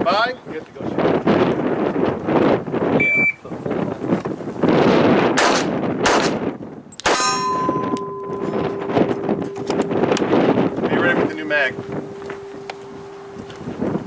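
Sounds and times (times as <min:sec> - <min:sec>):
wind buffeting microphone: 0:00.0 - 0:14.0
pistol shot: 0:05.4 - 0:06.4
ringing metal clang: 0:06.2 - 0:14.0.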